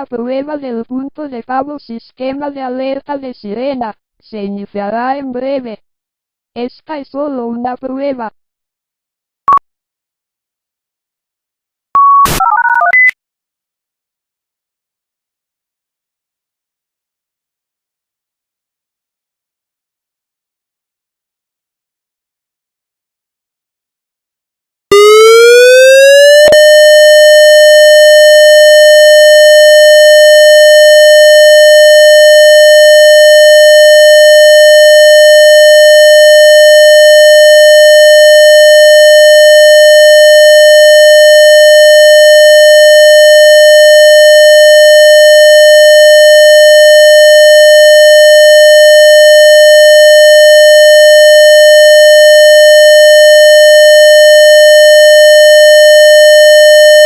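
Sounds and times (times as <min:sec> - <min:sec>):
synthesized warning siren: 0:24.9 - 0:57.0.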